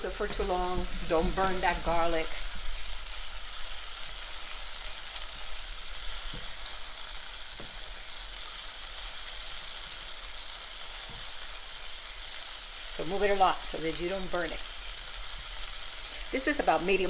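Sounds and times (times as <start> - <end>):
garlic sizzling in a pot: 0.0 - 17.0.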